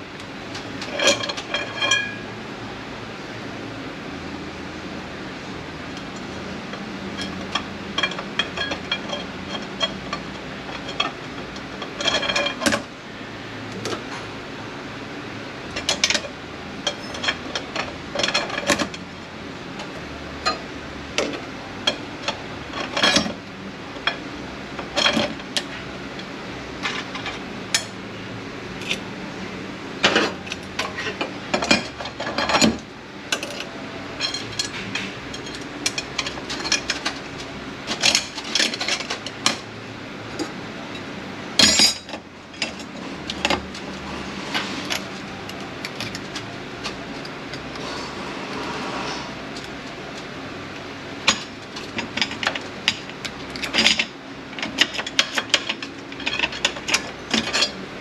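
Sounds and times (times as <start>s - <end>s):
steady background hum: 0.0s - 58.0s
metal parts clinking: 0.6s - 2.2s, 6.0s - 12.8s, 15.7s - 19.0s, 30.0s - 39.6s, 40.4s - 43.8s, 51.3s - 57.8s.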